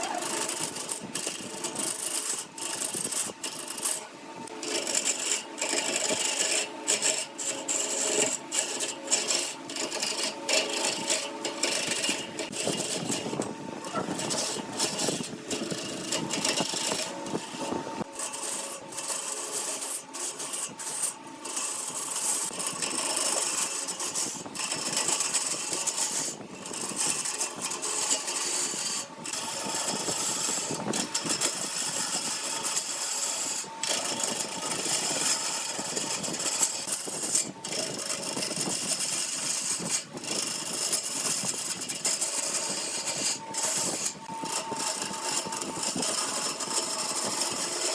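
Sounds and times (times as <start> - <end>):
lathe tool scraping wood: 0.0 - 47.9.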